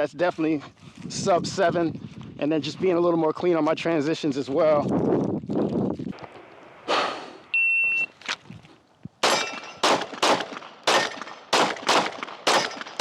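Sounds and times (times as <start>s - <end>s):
shot timer beep: 7.5s - 8.1s
steel target ringing: 9.2s - 9.8s
pistol shots: 9.2s - 13.0s.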